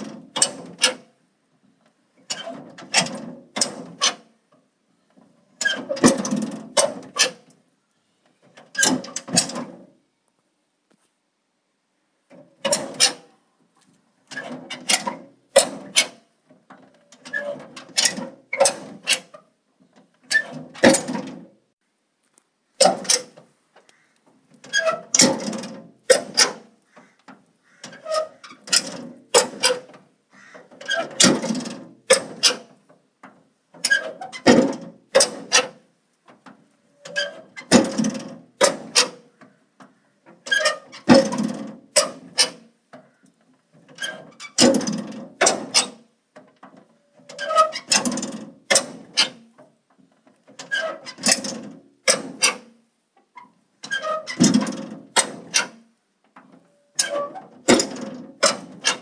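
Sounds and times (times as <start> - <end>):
metallic latch clicks and knocks: 12.3 - 13.4, 22.8 - 23.9, 24.5 - 43.1, 43.8 - 52.7, 53.8 - 59.0
squeaky door hinge: 12.6 - 13.4, 22.8 - 32.8, 33.8 - 35.8, 36.9 - 43.2, 43.9 - 46.1, 47.0 - 49.5, 50.6 - 52.8, 53.4 - 55.9, 56.7 - 59.0.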